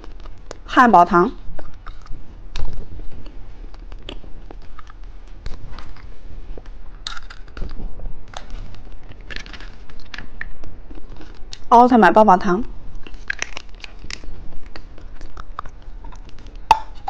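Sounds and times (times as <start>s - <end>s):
chewing clicks and crackles: 0.0s - 0.6s, 1.5s - 11.7s, 12.9s - 17.0s
candy wrapper crinkling: 7.0s - 11.7s, 12.9s - 17.0s.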